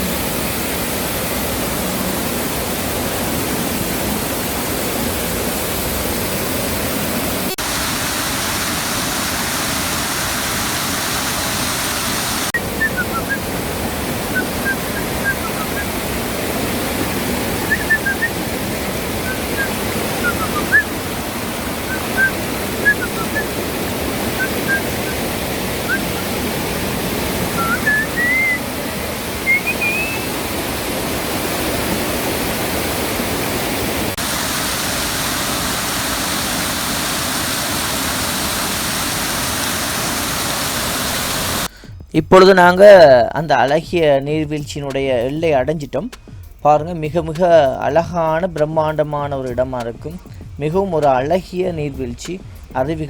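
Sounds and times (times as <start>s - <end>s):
waterfall rushing: 0.0s - 41.8s
rising whistles: 7.6s - 31.0s
short high chirps: 17.6s - 18.4s, 27.6s - 28.6s, 29.4s - 30.4s.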